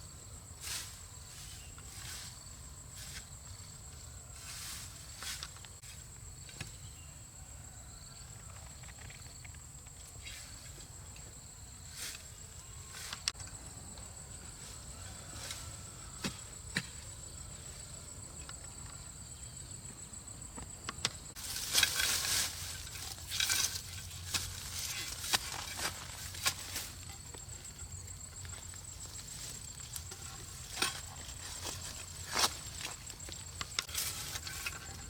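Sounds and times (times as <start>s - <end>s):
rustling and scraping: 4.4s - 6.8s, 20.5s - 35.0s.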